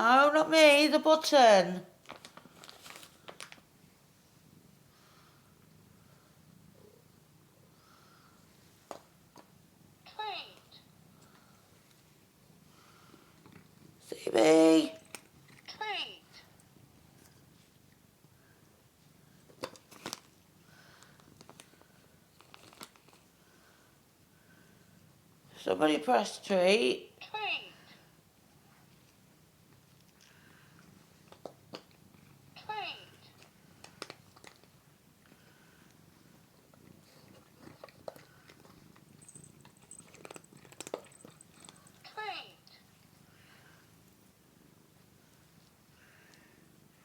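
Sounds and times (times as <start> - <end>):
cat crunching a dry treat: 2.0 - 3.7, 15.0 - 15.7, 19.4 - 20.4, 21.0 - 23.3, 29.7 - 32.5, 33.1 - 42.1.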